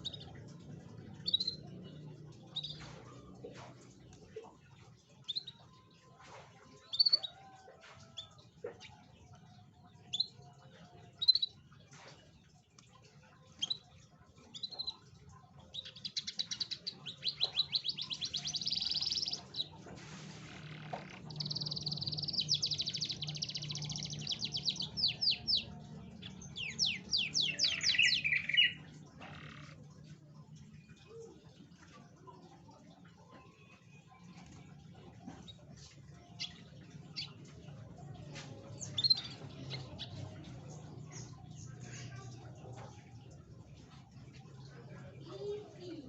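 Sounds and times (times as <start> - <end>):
canary singing: 0.0 - 3.6, 13.5 - 19.8, 20.4 - 29.8, 33.6 - 42.2.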